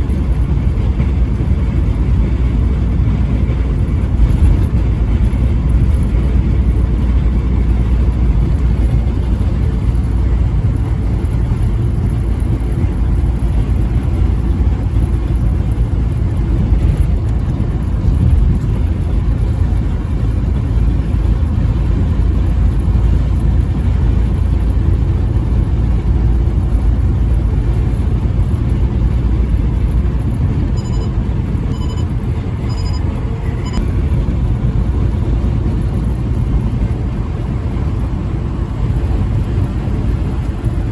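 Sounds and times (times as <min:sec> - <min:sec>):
vehicle driving on highway: 0:00.0 - 0:40.9
faint short beeps: 0:30.8 - 0:33.8.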